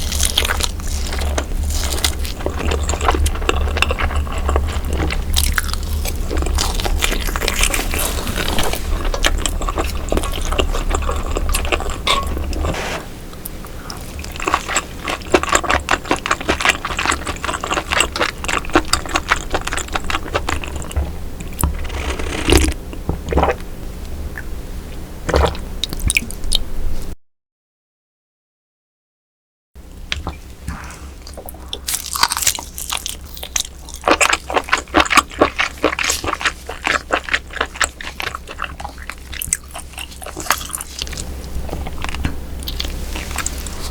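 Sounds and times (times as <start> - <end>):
low hum: 0.0 - 15.1
crunchy wet chewing: 0.0 - 23.6, 31.1 - 43.9.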